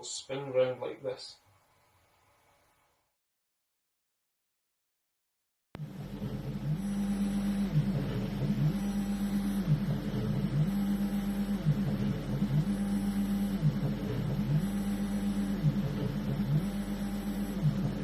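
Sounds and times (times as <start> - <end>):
stepper motor whine: 5.8 - 18.0.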